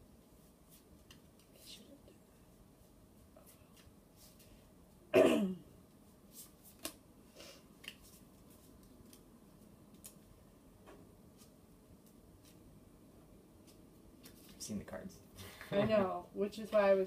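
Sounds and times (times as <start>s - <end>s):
person clearing throat: 5.2s - 5.7s
playing cards clicking: 9.9s - 10.2s.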